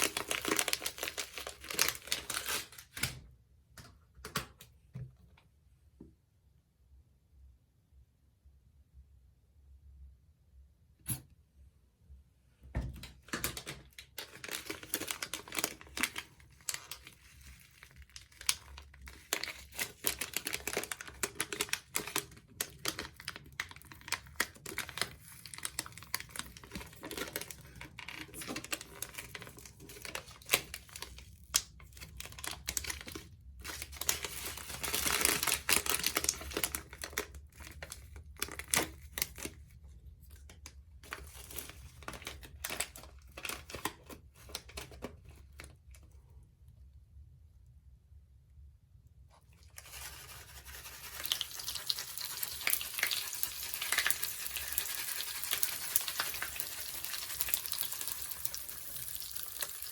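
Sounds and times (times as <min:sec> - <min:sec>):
soapy sponges crackling: 0:49.8 - 0:59.9.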